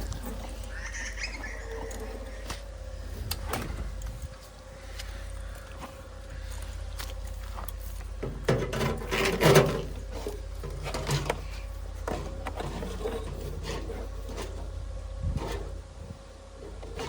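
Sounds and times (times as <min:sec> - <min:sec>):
steady low hum: 0:00.0 - 0:17.0
irregular knocks and scrapes: 0:07.5 - 0:15.8.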